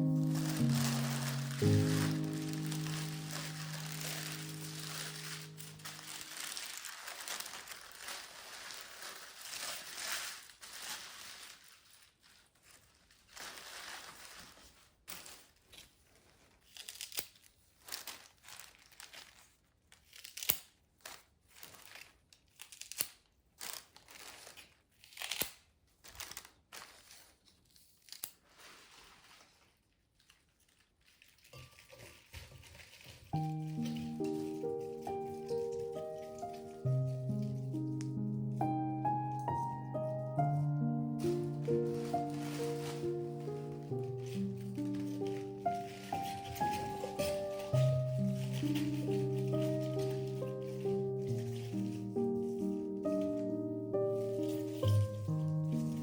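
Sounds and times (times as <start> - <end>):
soft background music: 0.0 - 6.8, 33.4 - 56.0
crinkling and rustling: 0.0 - 56.0.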